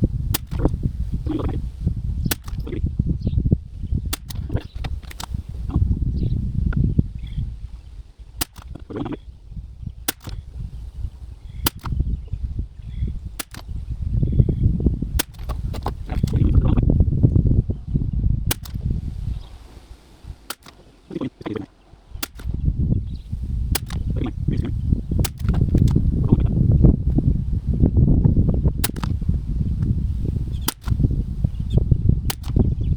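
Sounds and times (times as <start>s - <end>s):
wind rumbling on microphone: 0.0s - 32.9s
rifle shots cracking: 11.6s - 12.0s, 15.2s - 16.5s, 18.5s - 18.9s, 20.4s - 21.0s, 22.2s - 22.6s.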